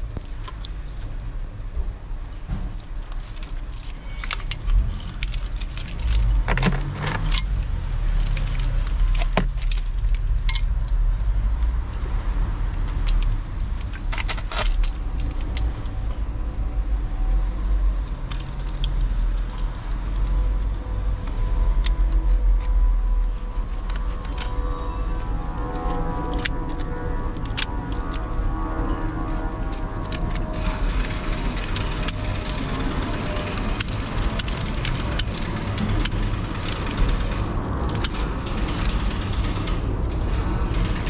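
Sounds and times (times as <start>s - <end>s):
engine and road rumble: 0.0s - 41.0s
keys jangling: 2.7s - 10.7s, 13.0s - 16.8s, 18.0s - 20.8s, 23.1s - 28.2s, 29.6s - 41.0s.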